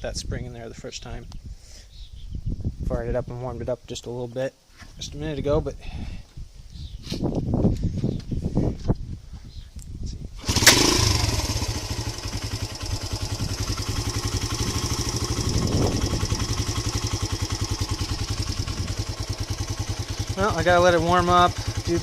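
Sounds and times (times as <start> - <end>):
motorcycle engine starting and idling: 10.4 - 22.0.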